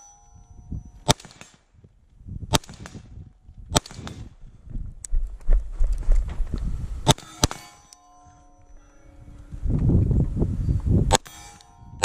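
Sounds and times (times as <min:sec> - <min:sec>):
rifle shots with echo: 0:01.0 - 0:01.6, 0:02.5 - 0:03.1, 0:03.7 - 0:04.3, 0:07.0 - 0:07.9.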